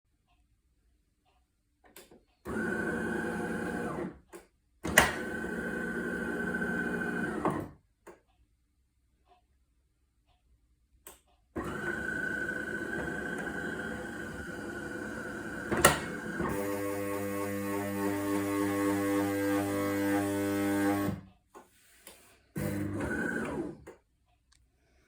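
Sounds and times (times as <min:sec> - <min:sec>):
espresso machine buzzing: 0:05.1 - 0:07.4, 0:11.6 - 0:21.2, 0:22.6 - 0:23.7.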